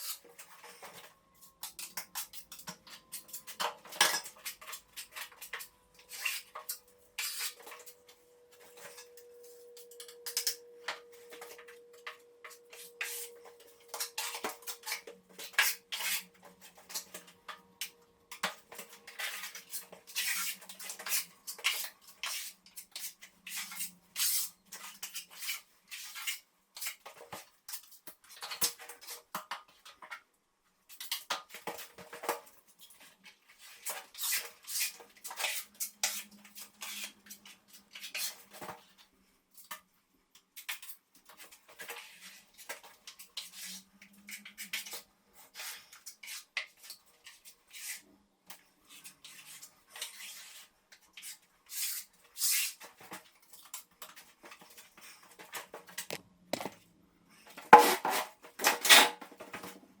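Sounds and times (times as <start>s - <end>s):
metal spatula scraping a wall: 0.0s - 17.6s, 18.3s - 27.2s, 32.8s - 38.6s, 41.3s - 55.4s, 57.4s - 59.2s.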